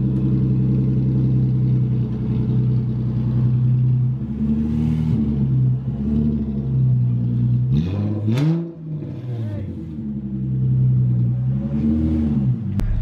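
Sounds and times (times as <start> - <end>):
car engine idling loudly: 0.0 - 4.4.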